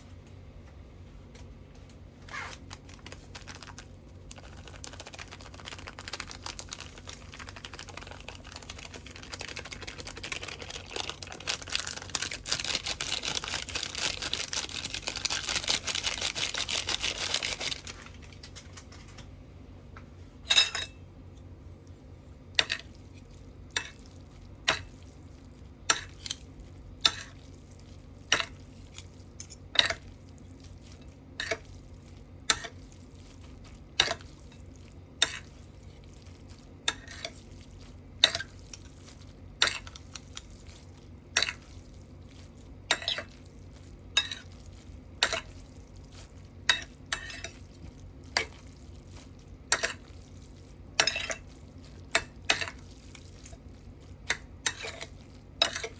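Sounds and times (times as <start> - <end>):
steady low hum: 0.0 - 55.9
utensil clinking against a dish: 20.5 - 21.0, 23.7 - 24.1, 24.7 - 25.0, 25.9 - 27.5, 28.3 - 30.1, 36.5 - 37.5, 38.2 - 41.8, 42.9 - 50.3, 51.0 - 55.9.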